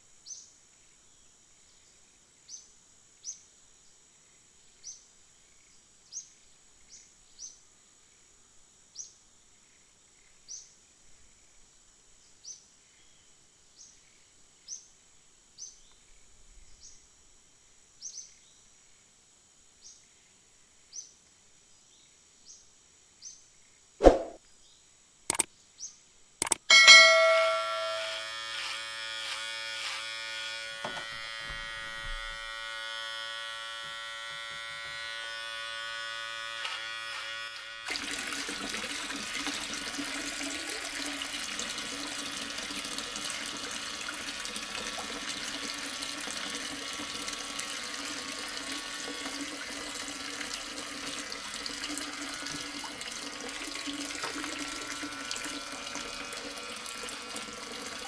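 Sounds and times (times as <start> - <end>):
water pouring and splashing: 37.9 - 58.0.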